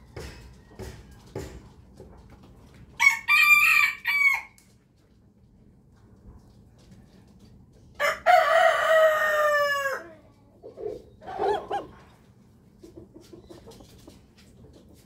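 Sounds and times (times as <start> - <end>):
rooster crowing: 3.0 - 4.6, 8.0 - 10.2.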